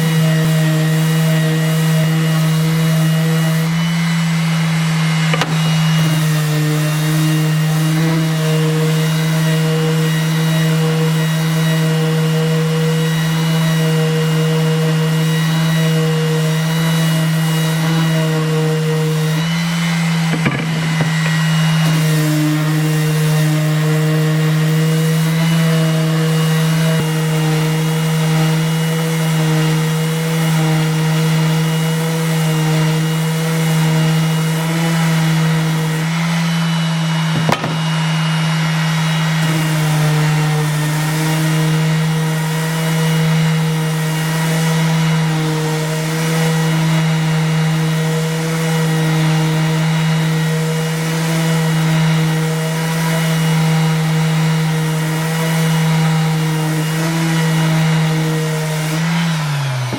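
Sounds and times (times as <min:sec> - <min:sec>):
electric sander on wood: 0:00.0 - 0:59.9.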